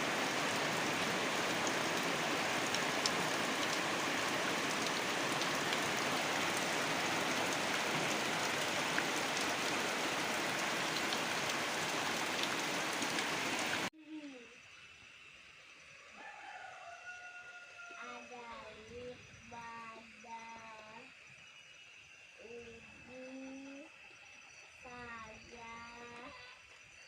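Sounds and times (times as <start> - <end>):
heavy rain falling: 0.0 - 13.9.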